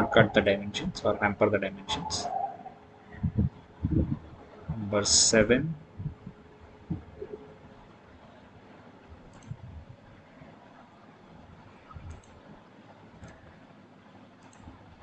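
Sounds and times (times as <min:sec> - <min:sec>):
computer mouse clicks: 0:09.3 - 0:09.6, 0:12.0 - 0:12.4, 0:13.2 - 0:13.4, 0:14.4 - 0:14.8.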